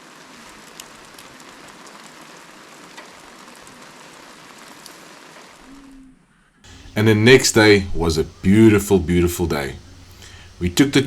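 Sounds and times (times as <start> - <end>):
steady rain: 0.0 - 6.0, 6.7 - 11.0
drops tapping: 6.7 - 11.0.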